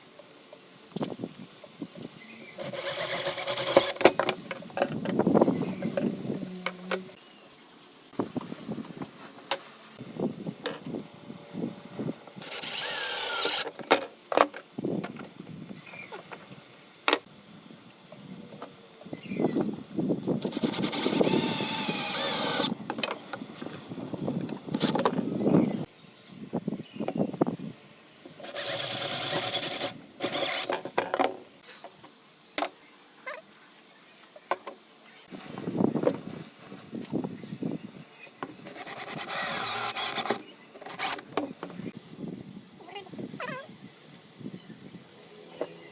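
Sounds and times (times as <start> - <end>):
power tool running: 2.6 - 4.0, 12.4 - 13.7, 20.4 - 22.8, 28.4 - 30.8, 38.6 - 41.2.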